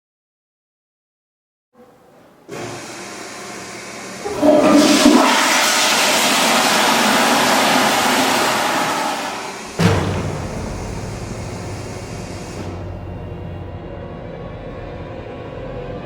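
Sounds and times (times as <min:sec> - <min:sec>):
rushing water: 0:02.5 - 0:12.8.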